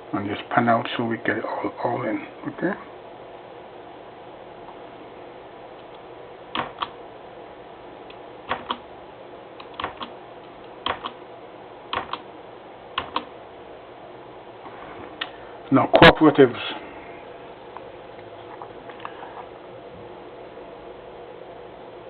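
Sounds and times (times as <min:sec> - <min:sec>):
sharp clicks: 0:06.6 - 0:07.0, 0:09.6 - 0:11.2, 0:11.9 - 0:12.3, 0:13.0 - 0:13.3.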